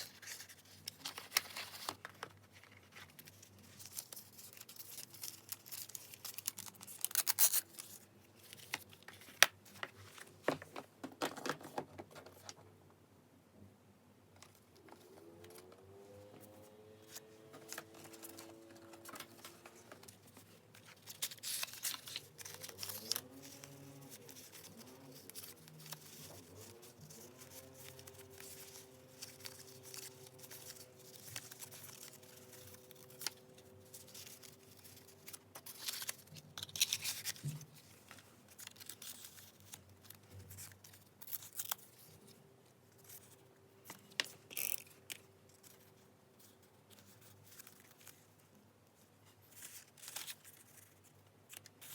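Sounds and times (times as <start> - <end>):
paper rustling: 0.0 - 12.6, 14.4 - 48.6, 49.2 - 51.9
scissors snipping paper: 20.9 - 33.4.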